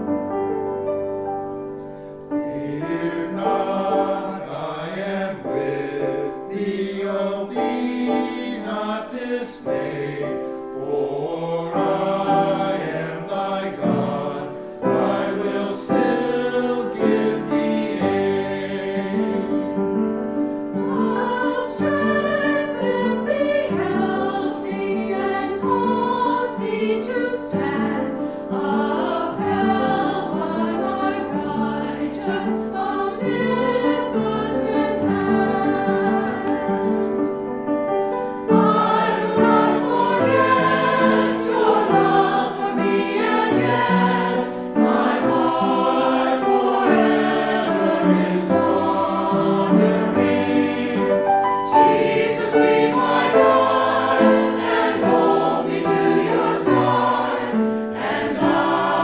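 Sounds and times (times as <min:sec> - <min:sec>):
choir singing a hymn: 0:00.0 - 0:59.0.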